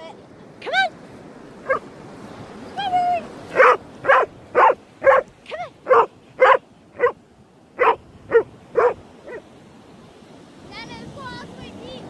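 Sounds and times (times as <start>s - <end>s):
dog barking: 1.6s - 1.8s, 3.5s - 7.2s, 7.8s - 9.4s
dog yelp: 3.5s - 5.2s, 5.9s - 7.2s, 7.8s - 9.4s.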